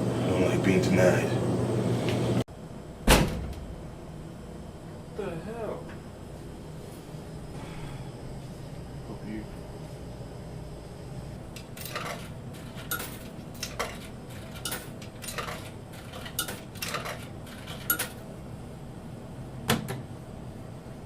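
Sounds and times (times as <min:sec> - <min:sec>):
vending machine rattling: 0:11.6 - 0:18.2.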